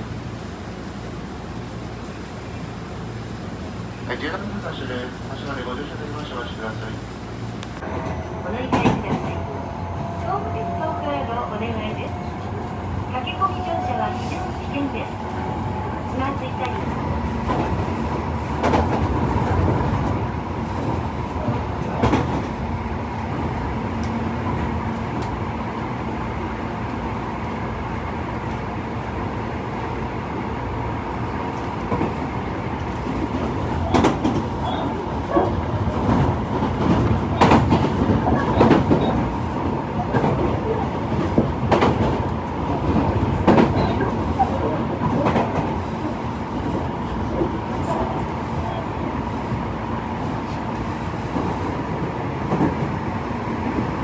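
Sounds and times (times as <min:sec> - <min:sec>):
electric train humming: 0:00.0 - 0:54.0.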